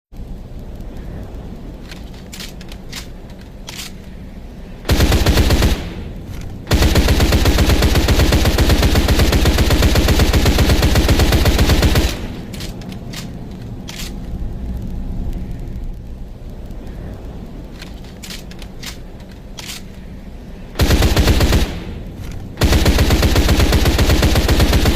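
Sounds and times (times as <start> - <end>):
low rumble: 0.1 - 24.9
faint clicks: 0.2 - 20.9
submachine gun automatic fire: 4.9 - 6.1, 6.7 - 12.7, 20.8 - 22.0, 22.6 - 24.9.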